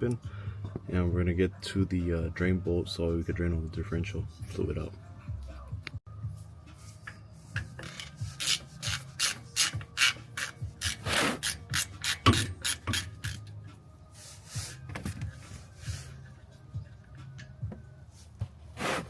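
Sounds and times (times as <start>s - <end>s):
ratchet wrench clicking: 7.8s - 13.5s.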